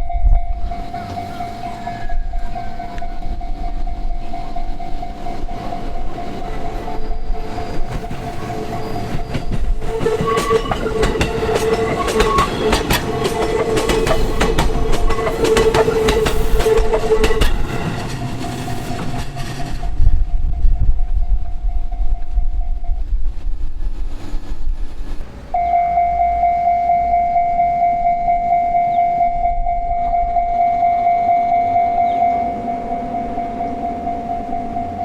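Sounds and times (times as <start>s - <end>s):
level crossing alarm ringing: 0.0s - 19.8s, 25.6s - 35.0s
steady warning tone: 0.0s - 23.3s, 25.5s - 35.0s
train rumble: 0.0s - 35.0s
train wheels clicking over rail joints: 0.6s - 20.4s.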